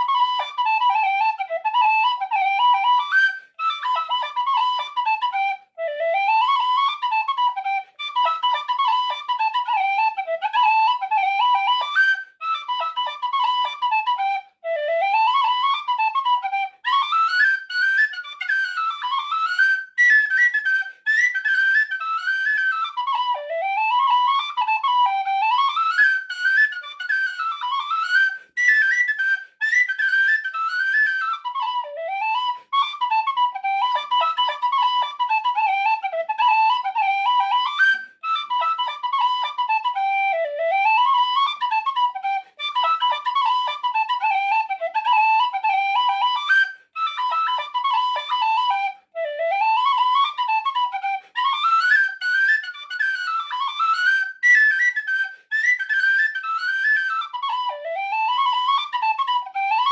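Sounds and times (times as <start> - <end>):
tin whistle playing a fast reel: 40.9 - 59.9.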